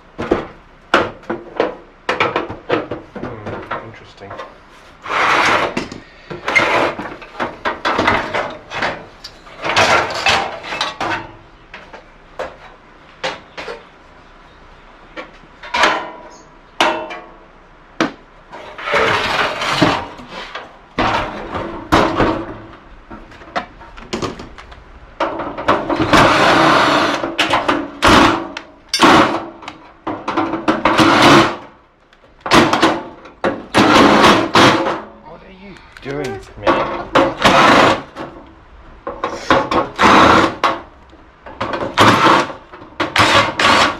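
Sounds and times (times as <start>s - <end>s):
sheet metal scraping: 5.0s - 11.4s, 18.5s - 22.7s, 25.2s - 29.7s, 36.6s - 38.4s, 39.1s - 40.8s, 41.6s - 43.9s
tools knocking and clanking: 5.7s - 13.9s, 36.2s - 43.9s.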